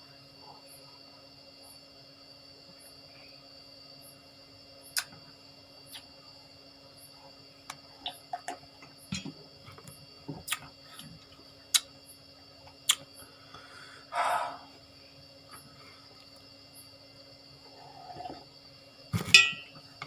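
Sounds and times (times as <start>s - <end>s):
chewing raw vegetables: 9.7s - 11.9s.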